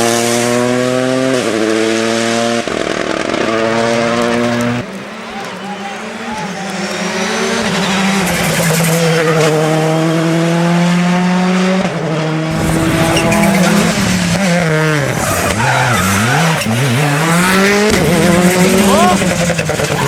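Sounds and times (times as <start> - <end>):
rally car engine revving: 0.0 - 20.0
tyre squeal: 12.5 - 17.8.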